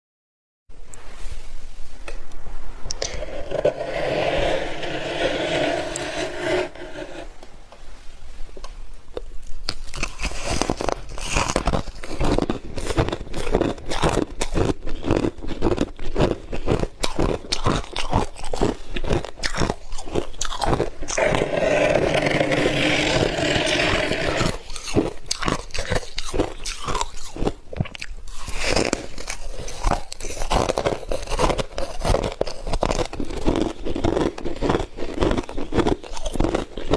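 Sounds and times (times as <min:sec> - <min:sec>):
crunching chews: 0:09.2 - 0:36.9.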